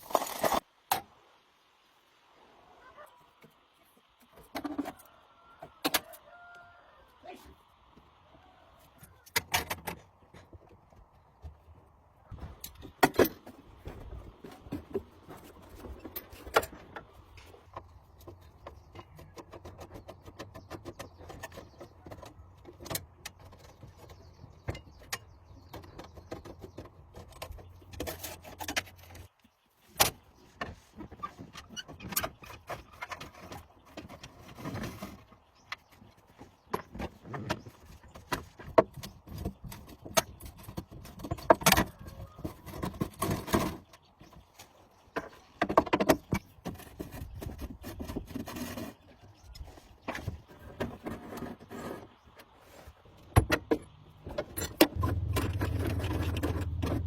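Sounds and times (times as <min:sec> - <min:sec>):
low steady hum: 0:53.9 - 0:57.0.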